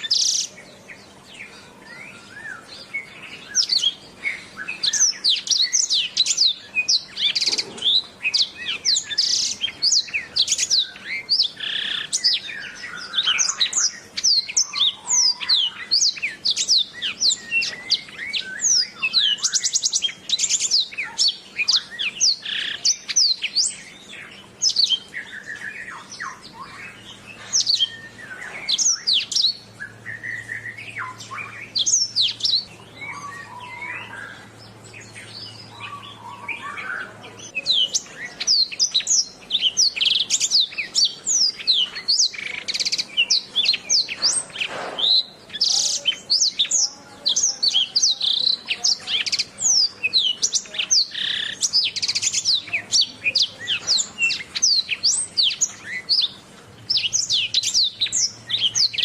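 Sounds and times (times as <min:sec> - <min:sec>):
canary singing chirps and trills: 0:00.0 - 0:59.0.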